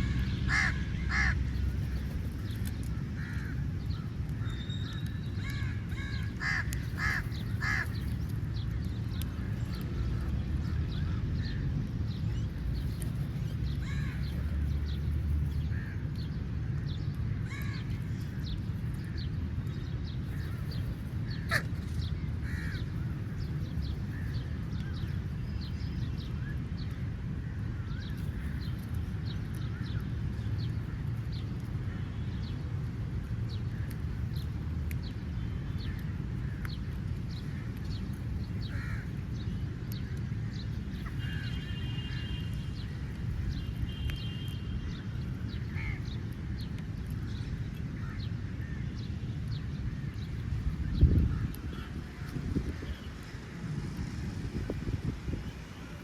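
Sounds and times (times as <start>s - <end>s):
crows cawing: 0.0s - 1.4s, 3.2s - 3.6s, 5.4s - 8.0s, 21.4s - 21.7s, 22.4s - 22.8s, 38.7s - 39.1s
steady low rumble: 0.0s - 56.0s.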